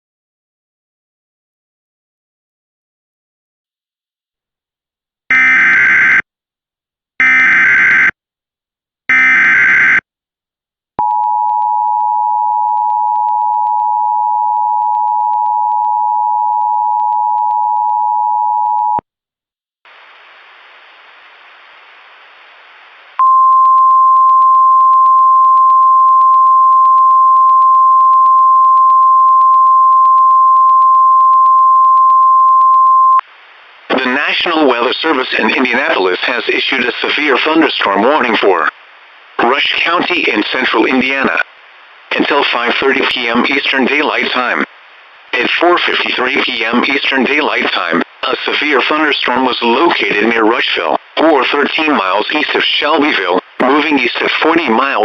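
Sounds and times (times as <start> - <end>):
two-tone attention signal: 23.2 - 33.2.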